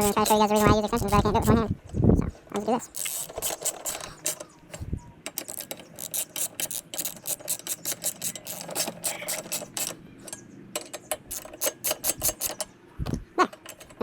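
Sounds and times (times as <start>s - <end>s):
ratchet wrench clicking: 2.9s - 4.6s, 5.3s - 12.7s.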